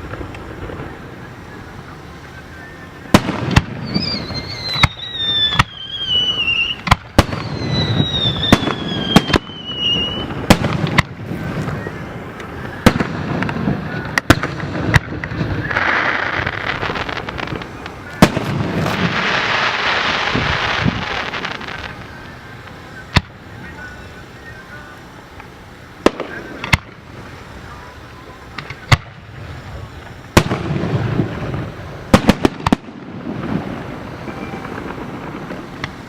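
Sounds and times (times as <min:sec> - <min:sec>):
crackling fireworks: 0:00.0 - 0:36.0
fireworks loud bangs: 0:00.0 - 0:36.0
whistling fireworks: 0:00.0 - 0:36.0.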